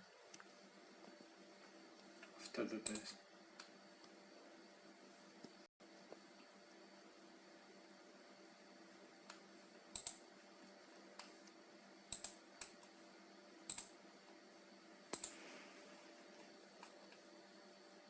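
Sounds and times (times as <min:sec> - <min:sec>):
faint steady hum: 0:00.0 - 0:18.0
computer mouse clicks: 0:02.8 - 0:03.7, 0:09.3 - 0:10.2, 0:12.1 - 0:12.9, 0:13.7 - 0:13.9, 0:15.1 - 0:15.4.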